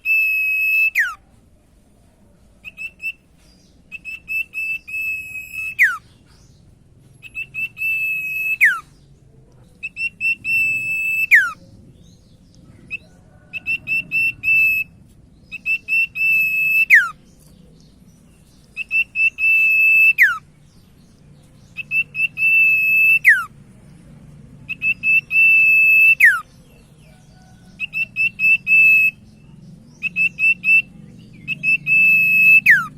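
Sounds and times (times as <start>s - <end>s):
bird trilled whistle: 0.0s - 1.2s, 2.6s - 3.2s, 3.9s - 6.1s, 7.2s - 8.9s, 9.8s - 11.6s, 12.9s - 14.9s, 15.5s - 17.2s, 18.7s - 20.4s, 21.8s - 23.5s, 24.7s - 26.5s, 27.4s - 29.2s, 30.0s - 32.9s.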